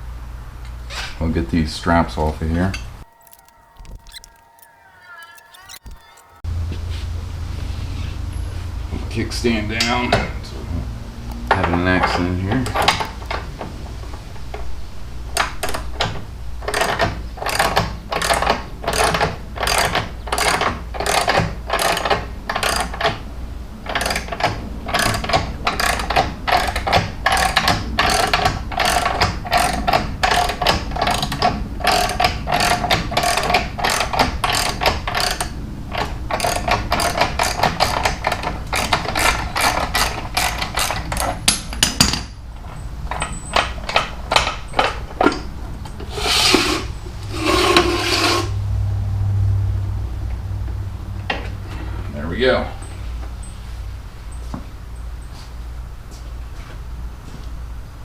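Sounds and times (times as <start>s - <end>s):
ratchet clicking: 3.1s - 6.4s.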